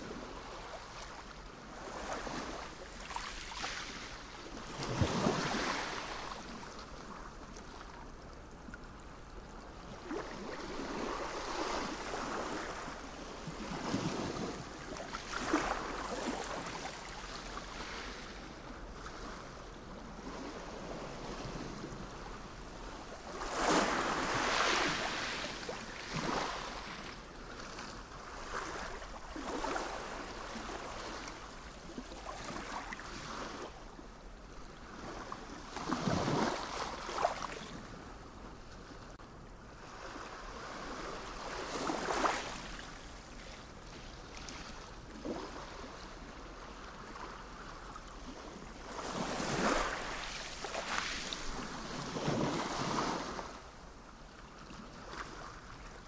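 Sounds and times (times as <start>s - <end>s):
sea waves breaking: 1.9s - 6.7s, 10.0s - 19.4s, 23.2s - 33.8s, 48.9s - 53.6s.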